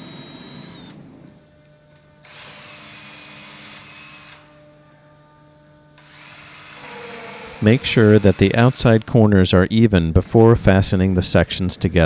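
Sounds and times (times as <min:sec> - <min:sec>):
power drill drilling into wood: 0:00.0 - 0:04.7, 0:06.0 - 0:09.4.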